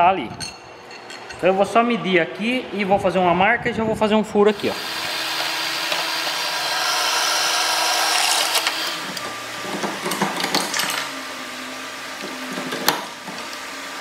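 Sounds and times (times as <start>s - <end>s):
electric drill boring metal: 4.5s - 14.0s.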